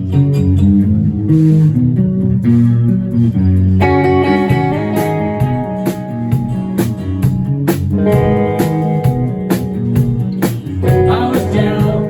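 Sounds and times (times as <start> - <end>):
bass line: 0.0 - 12.0
electric guitar: 0.0 - 12.0.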